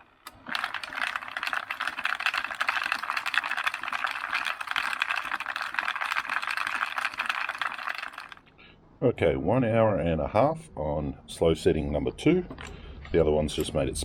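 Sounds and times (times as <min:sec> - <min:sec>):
rotary tumbler rattling metal: 0:00.0 - 0:08.4.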